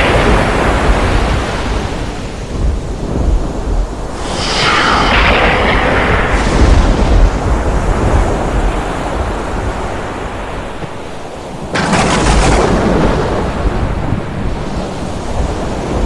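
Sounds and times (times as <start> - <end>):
low thunder rumble: 0.0 - 16.0
rushing wind: 0.0 - 16.0
sea: 0.0 - 16.0
sudden loud crash: 4.1 - 8.1.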